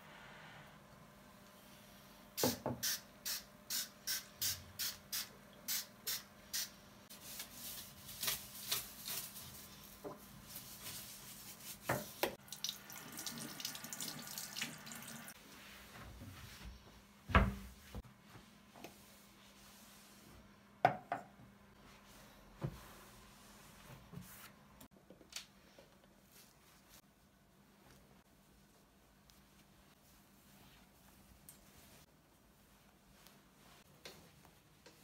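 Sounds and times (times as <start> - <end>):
spray bottle hissing: 2.4 - 6.8
water and wiping noise: 7.0 - 20.6, 21.7 - 24.7, 26.2 - 35.0.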